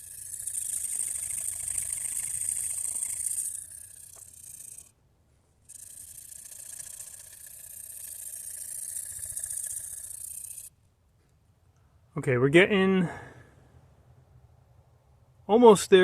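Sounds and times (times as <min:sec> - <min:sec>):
knife grinding on whetstone: 0:00.0 - 0:04.9, 0:05.7 - 0:10.7.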